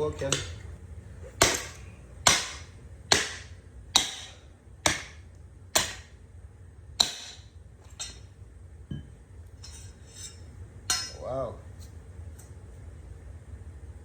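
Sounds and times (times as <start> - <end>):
hammer striking steel blade: 1.4 - 5.2, 5.8 - 6.1, 7.0 - 7.4, 10.9 - 11.2.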